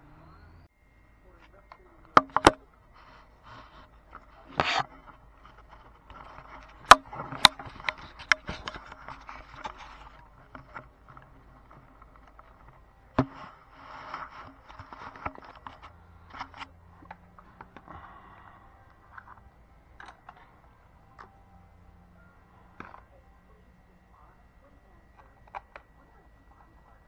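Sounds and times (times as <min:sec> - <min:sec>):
parts scraping and rustling: 0:01.4 - 0:21.4
sharp clicks: 0:02.2 - 0:02.6.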